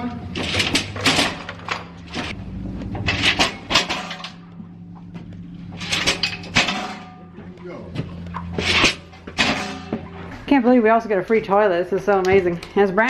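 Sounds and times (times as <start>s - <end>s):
steady low hum: 0.0s - 13.0s
hard objects clunking and knocking: 0.2s - 10.3s.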